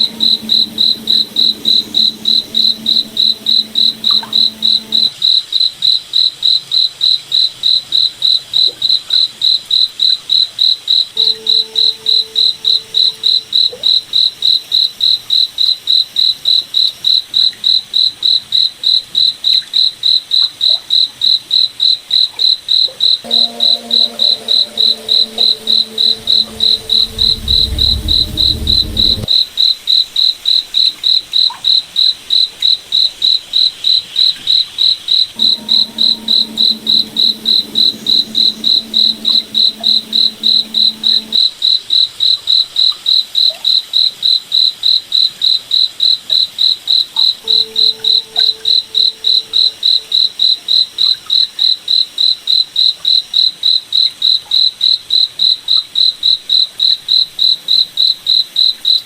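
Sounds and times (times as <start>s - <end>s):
cricket chirping: 0.0s - 5.1s, 35.4s - 41.5s
faint low hum: 0.0s - 5.1s, 23.3s - 29.3s, 35.4s - 41.4s.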